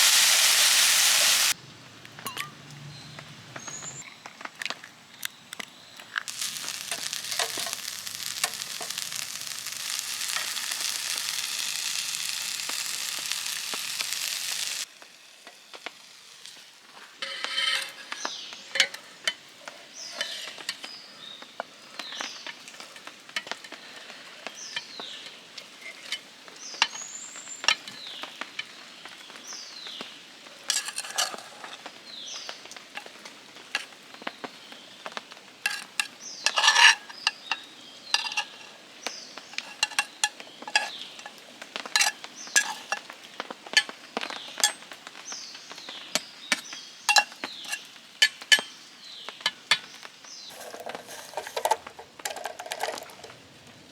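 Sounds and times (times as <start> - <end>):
campfire crackling: 0.0 - 2.4, 6.0 - 53.9
sharp pops and clicks: 5.6 - 16.6.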